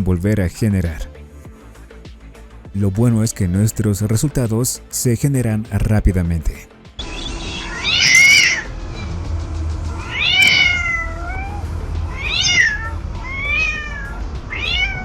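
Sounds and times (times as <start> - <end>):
cats yowling: 7.0 - 9.2, 9.9 - 15.0
low steady rumble: 7.0 - 15.0.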